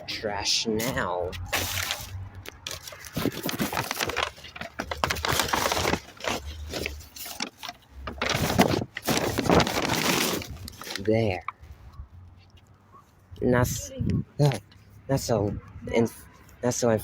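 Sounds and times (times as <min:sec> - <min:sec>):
cardboard box being crushed: 0:01.5 - 0:11.0.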